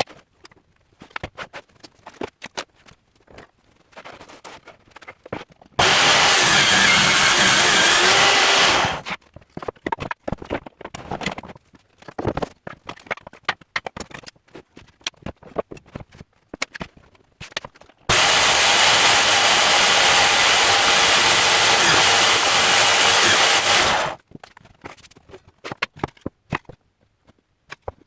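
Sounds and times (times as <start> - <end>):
power tool running: 5.8 - 9.1, 18.1 - 24.2.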